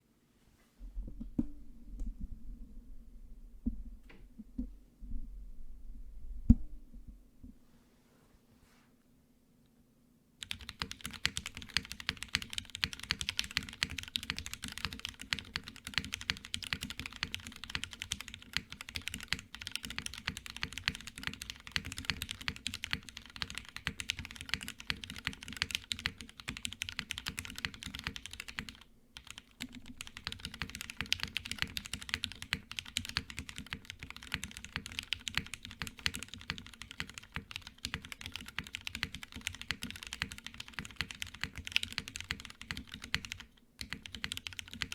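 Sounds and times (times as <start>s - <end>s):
mechanical keyboard typing: 10.4s - 44.9s.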